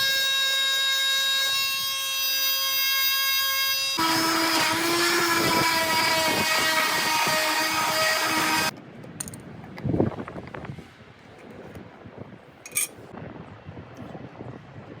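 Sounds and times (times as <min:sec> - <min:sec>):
power tool whining: 0:00.0 - 0:08.7
tool grinding wood: 0:00.0 - 0:08.7.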